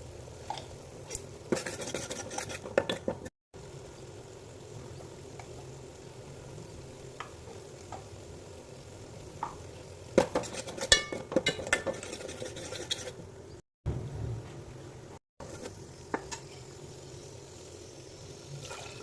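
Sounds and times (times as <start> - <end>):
metal spoon clinking in pot: 10.8 - 11.9.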